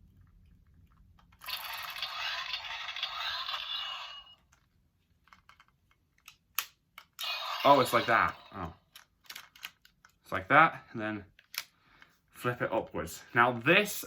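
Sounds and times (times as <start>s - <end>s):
plastic toy scraping and rustling: 1.4s - 4.6s
small plastic clicks: 8.9s - 10.2s.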